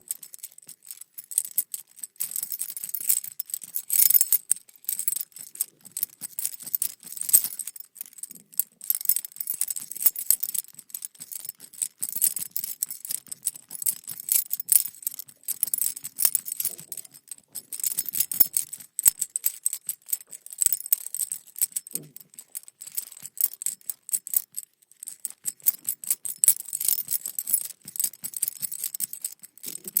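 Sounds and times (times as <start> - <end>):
metal keys jangling: 0.1 - 30.0.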